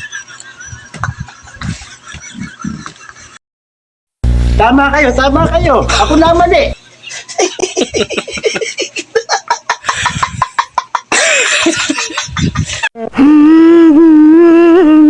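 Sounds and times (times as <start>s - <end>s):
bursts of laughter: 0.0s - 3.4s
steady held tone: 4.2s - 6.8s.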